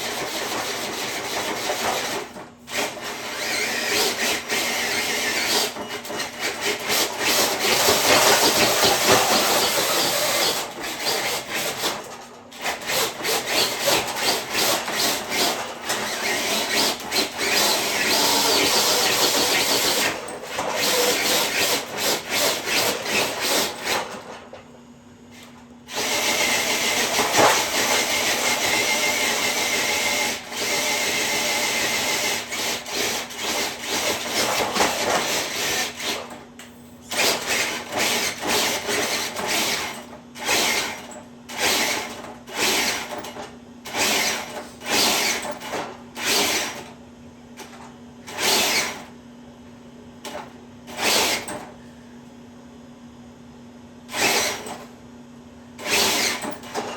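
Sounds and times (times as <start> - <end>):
electric motor whining: 15.5 - 21.9.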